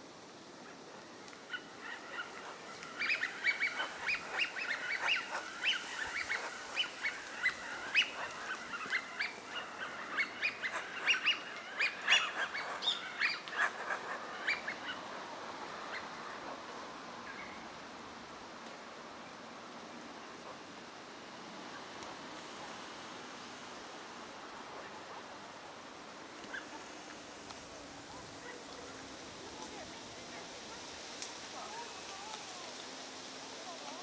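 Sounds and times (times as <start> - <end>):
flock of ducks calling: 1.5 - 15.1.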